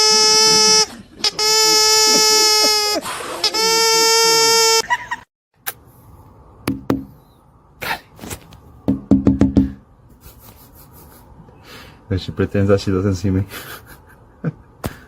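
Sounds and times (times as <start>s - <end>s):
loud buzzing tone: 0.0s - 4.8s.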